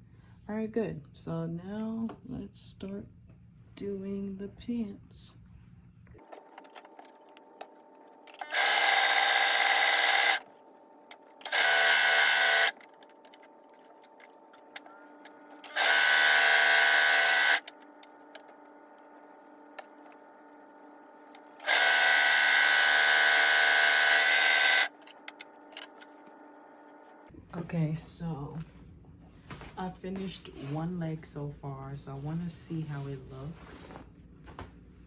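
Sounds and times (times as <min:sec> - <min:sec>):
overlock sewing machine stitching: 0:11.4 - 0:12.8.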